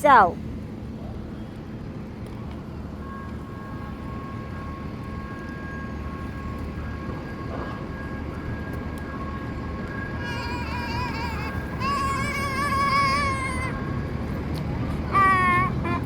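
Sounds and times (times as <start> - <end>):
low rumbling background noise: 0.0 - 16.0
faint steady high tones: 2.7 - 14.4.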